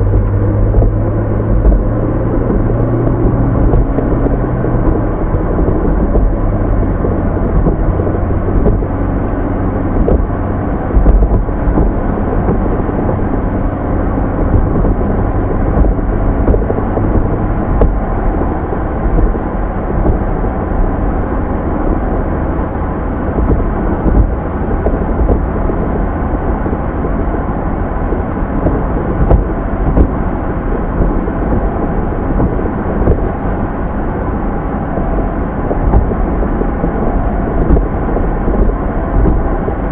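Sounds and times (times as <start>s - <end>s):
car engine and tyre rumble: 0.0s - 39.9s
low thumps: 0.0s - 39.9s.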